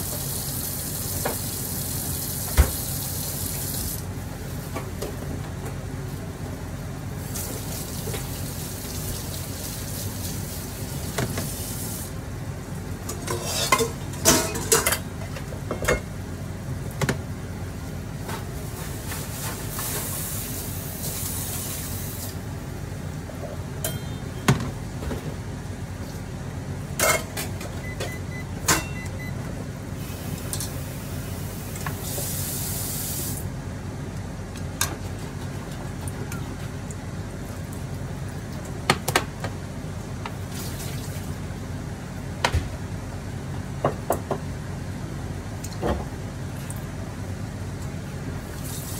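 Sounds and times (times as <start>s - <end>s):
utensils clinking on cookware: 13.1s - 15.0s, 23.8s - 24.2s, 28.7s - 29.0s.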